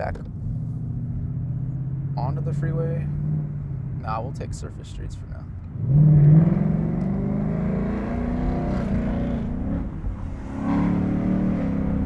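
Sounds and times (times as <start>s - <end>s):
car engine accelerating hard: 5.7s - 12.0s.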